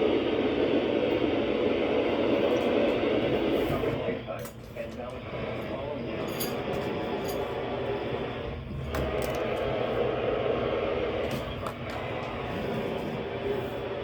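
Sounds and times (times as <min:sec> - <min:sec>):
radio static hissing: 0:00.0 - 0:06.2.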